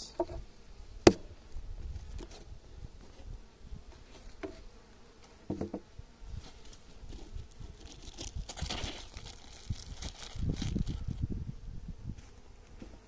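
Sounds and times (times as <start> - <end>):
honeybees buzzing: 0.0 - 13.0
wind rumble: 7.7 - 12.2.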